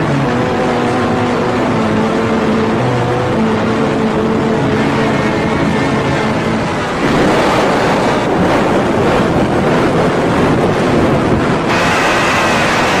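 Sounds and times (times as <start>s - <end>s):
loud distorted noise: 0.0s - 13.0s
steady high whine: 0.0s - 13.0s.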